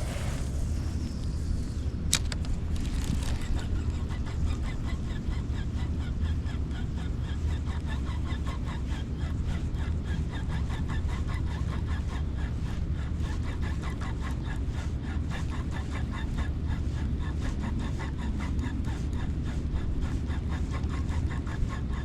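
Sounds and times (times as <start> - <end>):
steady low rumble: 0.0 - 4.8.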